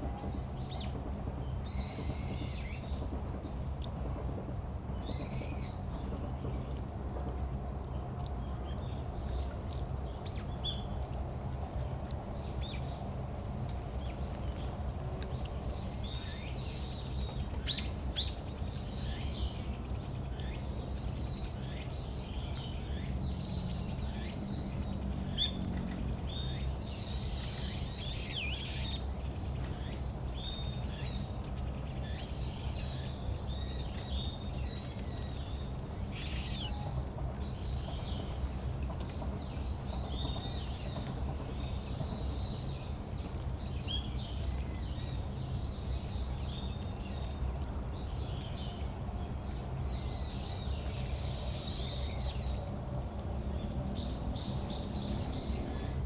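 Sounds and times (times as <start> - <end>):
high-pitched insect trill: 15.3 - 37.0, 42.4 - 56.0.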